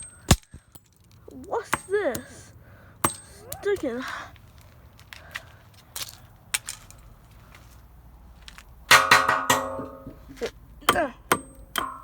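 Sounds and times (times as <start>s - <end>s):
sharp metallic knocks: 8.9s - 10.2s, 10.8s - 12.0s.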